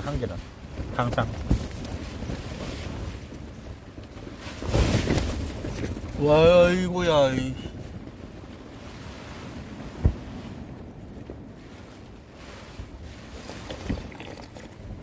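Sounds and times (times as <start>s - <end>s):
wind gusting against a tent: 0.0s - 15.0s
dull thumps: 9.9s - 10.6s.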